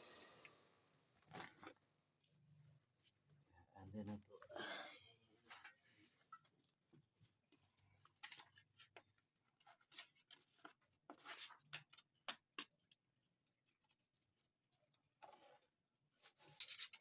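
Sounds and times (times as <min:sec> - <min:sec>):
handling rustles and scrapes: 0:05.4 - 0:12.1, 0:13.6 - 0:17.0.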